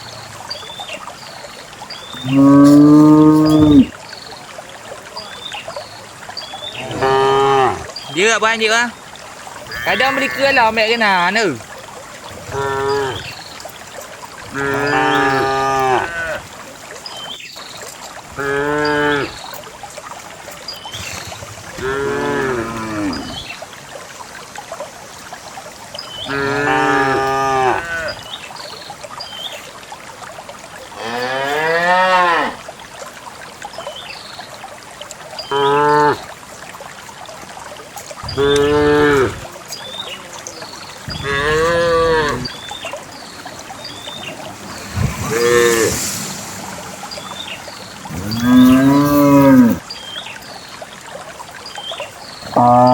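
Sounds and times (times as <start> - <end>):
cows mooing: 2.2 - 3.9, 6.8 - 7.8, 9.7 - 10.6, 12.4 - 13.2, 14.5 - 16.4, 21.8 - 23.4, 26.3 - 28.1, 38.3 - 39.4, 41.1 - 42.5, 44.4 - 46.0, 48.1 - 49.8.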